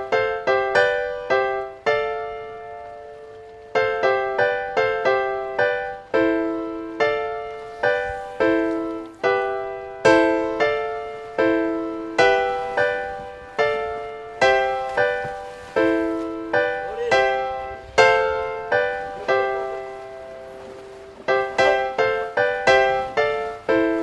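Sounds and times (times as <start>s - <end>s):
solo piano slow melody: 0.0s - 24.0s.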